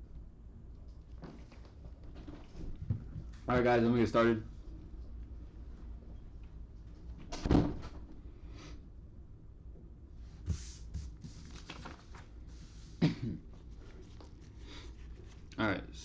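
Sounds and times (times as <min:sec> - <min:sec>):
cardboard rustling: 0:10.5 - 0:13.0.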